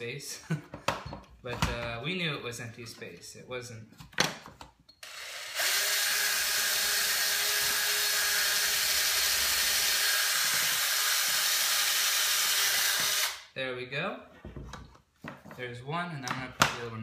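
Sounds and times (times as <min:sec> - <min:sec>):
cordless drill boring into wall: 0:05.0 - 0:13.4.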